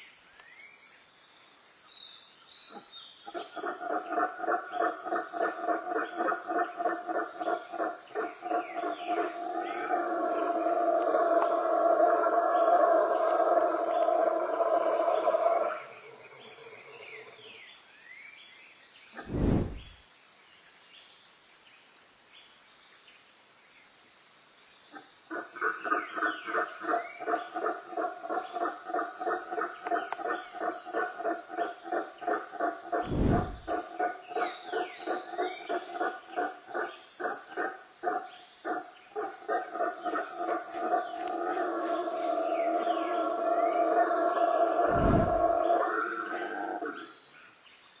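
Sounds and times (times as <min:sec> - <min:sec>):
frog croaking: 0:25.3 - 0:47.1.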